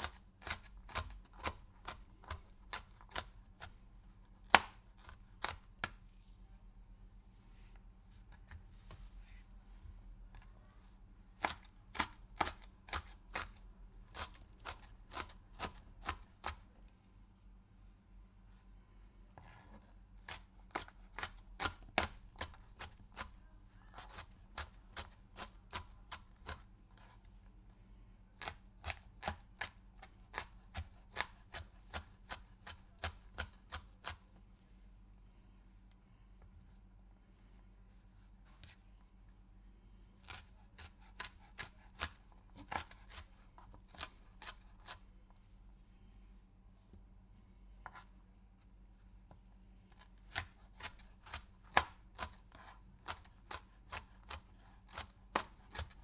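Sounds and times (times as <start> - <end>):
knife slicing: 40.2 - 45.0.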